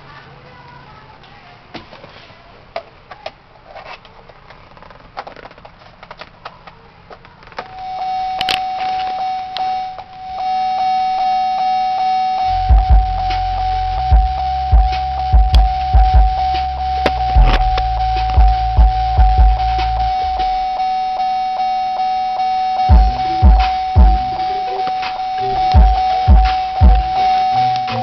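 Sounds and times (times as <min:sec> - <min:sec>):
high electronic tone: 0:07.8 - 0:28.0
deep pulsing subwoofer bass: 0:12.4 - 0:21.2, 0:22.8 - 0:24.8, 0:25.4 - 0:28.0.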